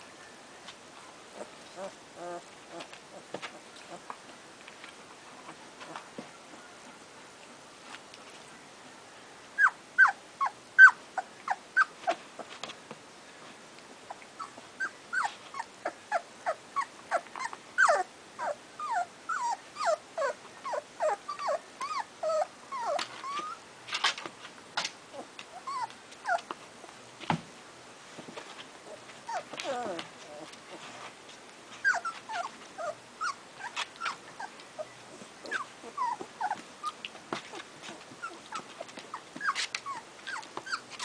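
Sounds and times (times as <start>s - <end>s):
puppies whimpering and yelping: 1.3s - 3.2s, 9.6s - 12.5s, 14.1s - 23.6s, 25.2s - 26.5s, 28.9s - 30.5s, 31.8s - 41.0s.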